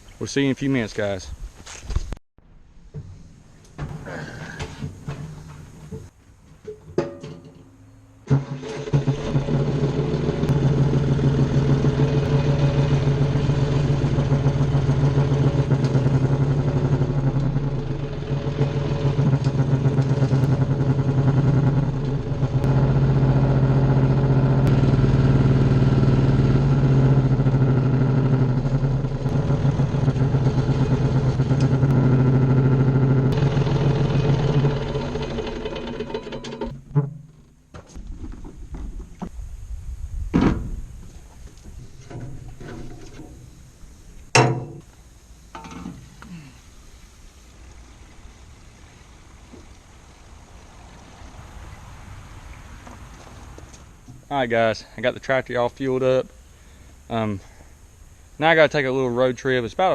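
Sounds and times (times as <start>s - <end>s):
tractor engine humming: 8.2s - 58.8s
knocks: 44.3s - 44.9s.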